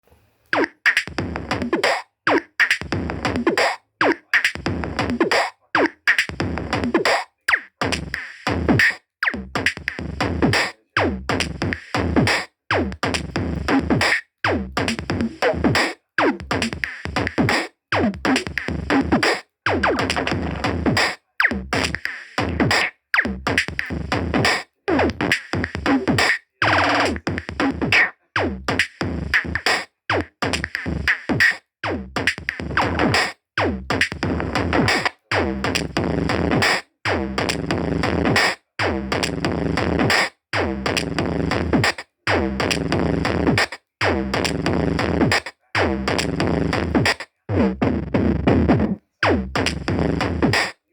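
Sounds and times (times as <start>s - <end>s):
electronic music: 11.4s - 38.5s.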